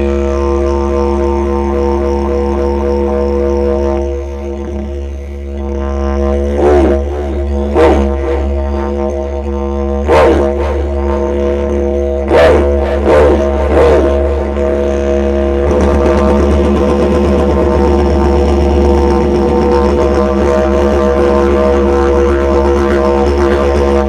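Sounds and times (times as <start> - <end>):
didgeridoo drone: 0.0 - 24.0.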